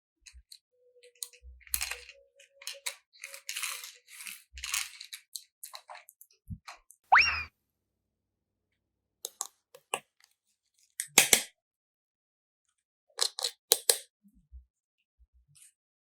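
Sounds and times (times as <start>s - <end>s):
clicks and rustles of small objects: 1.2s - 6.4s, 13.2s - 14.0s.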